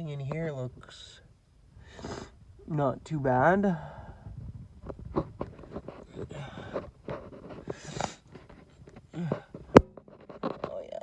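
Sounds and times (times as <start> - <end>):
breathy scraping rushes: 1.7 - 2.7, 3.4 - 9.8.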